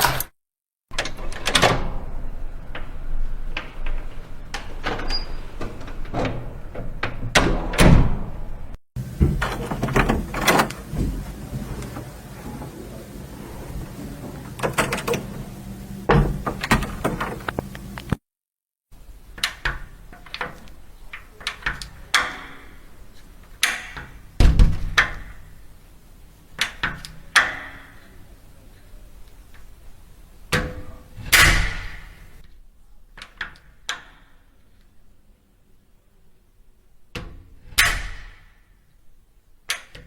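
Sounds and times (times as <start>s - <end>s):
door handles and latches clicking: 0.9s - 8.2s, 14.5s - 15.4s, 16.1s - 18.2s, 19.3s - 25.4s, 26.6s - 28.1s, 33.2s - 34.3s, 37.1s - 38.6s, 39.7s - 40.0s
heavy door thuds: 3.4s - 11.6s, 13.7s - 17.4s, 23.6s - 25.6s, 30.5s - 32.4s.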